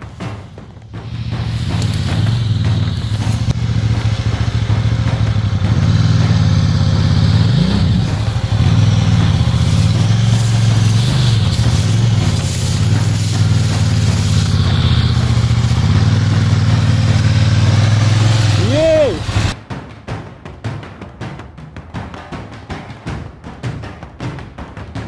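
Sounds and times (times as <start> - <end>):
motorcycle engine revving: 0.0 - 19.6.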